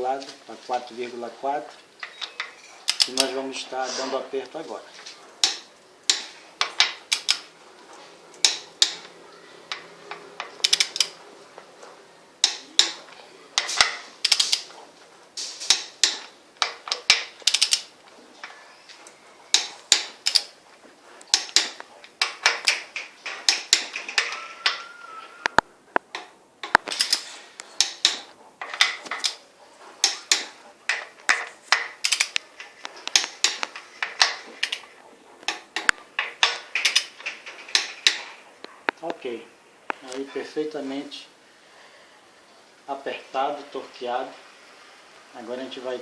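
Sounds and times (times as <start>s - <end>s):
torque wrench clicking: 2.0s - 3.3s, 5.4s - 7.5s, 8.4s - 9.1s, 9.7s - 11.2s, 13.6s - 14.7s, 15.7s - 17.9s, 19.5s - 20.5s, 21.2s - 24.8s, 26.0s - 29.4s, 30.0s - 32.4s.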